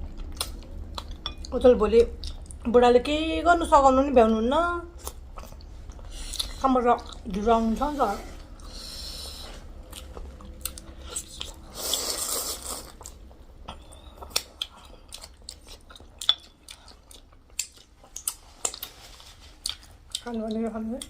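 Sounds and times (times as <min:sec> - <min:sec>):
chewing and biting: 0:09.8 - 0:20.3.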